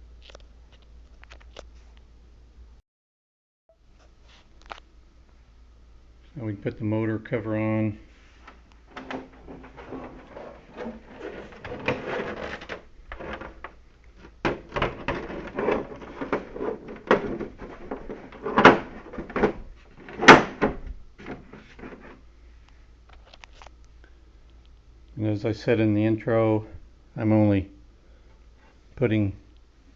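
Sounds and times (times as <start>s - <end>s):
plastic cover knocking and rattling: 8.9s - 22.2s.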